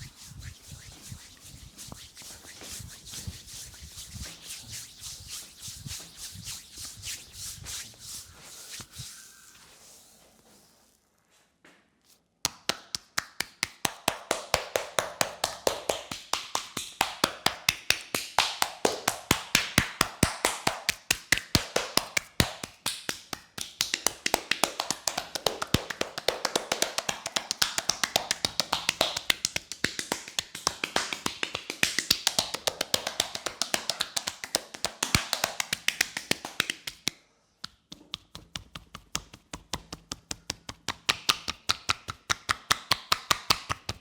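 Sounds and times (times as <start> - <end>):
hands slapping on body: 12.4 - 44.0.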